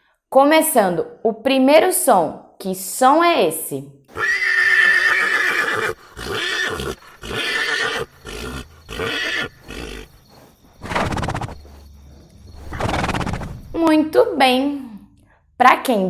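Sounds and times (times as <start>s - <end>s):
horse neighing: 4.1s - 10.2s, 10.8s - 11.7s, 12.6s - 13.5s
horse breathy snort: 5.0s - 13.8s.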